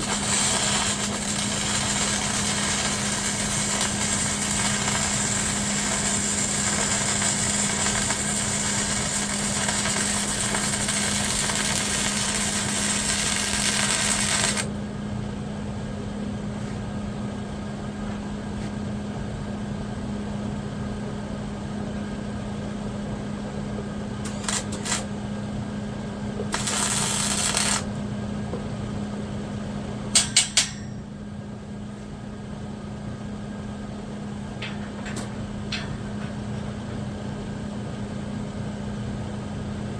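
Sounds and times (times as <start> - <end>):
welder arc crackling: 0.0 - 14.7, 24.3 - 25.1, 26.5 - 28.0
steady low hum: 0.0 - 39.9.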